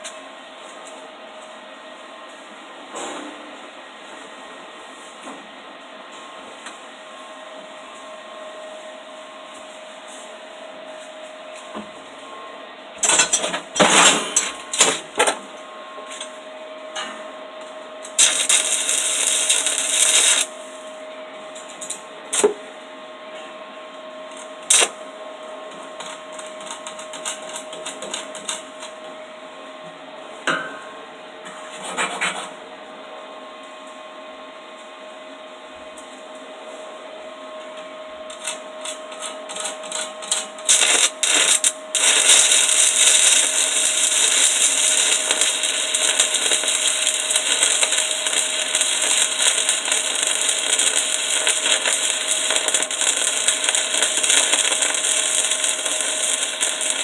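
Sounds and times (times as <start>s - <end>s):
welding arc crackling and sizzling: 13.0s - 15.3s, 18.0s - 20.6s, 24.6s - 25.0s, 26.0s - 28.9s, 38.3s - 57.0s
sharp cracks: 40.7s - 57.0s.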